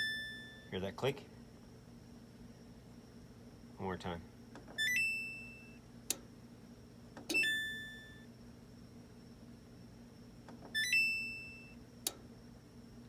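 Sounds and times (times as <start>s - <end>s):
dryer electronic chime: 0.0s - 0.8s, 4.8s - 5.8s, 7.3s - 8.3s, 10.8s - 11.8s
relay click: 7.2s - 7.8s.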